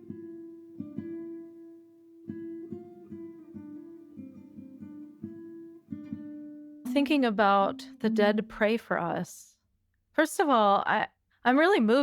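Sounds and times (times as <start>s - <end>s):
acoustic guitar plucked notes: 0.0s - 9.0s.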